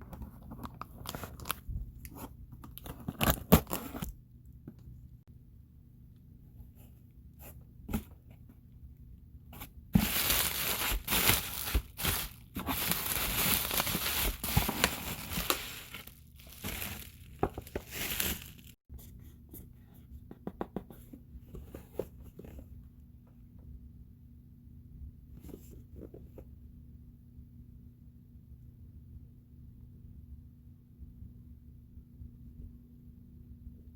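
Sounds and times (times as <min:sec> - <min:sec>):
packaging torn and crinkled: 0:10.0 - 0:18.8.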